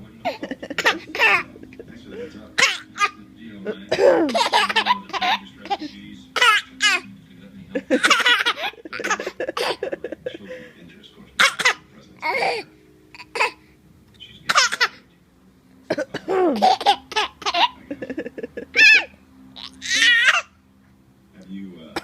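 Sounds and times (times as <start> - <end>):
baby laughing: 0.2 - 3.2, 3.9 - 7.1, 7.8 - 10.4, 11.4 - 12.6, 14.5 - 15.0, 16.4 - 20.5
baby coughing: 0.3 - 1.4, 2.6 - 3.2, 3.9 - 7.0, 8.0 - 9.8, 11.4 - 12.6, 13.2 - 13.6, 14.5 - 15.0, 15.9 - 17.7.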